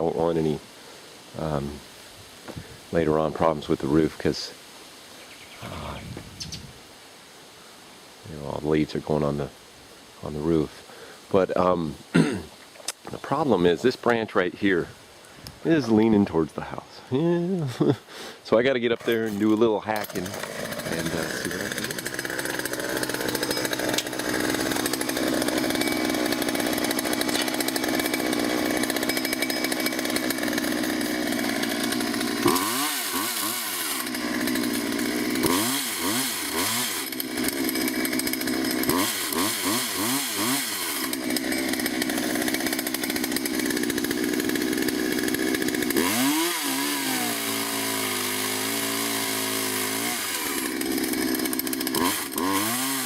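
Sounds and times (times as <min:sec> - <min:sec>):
chainsaw cutting branch: 0:18.9 - 0:53.0.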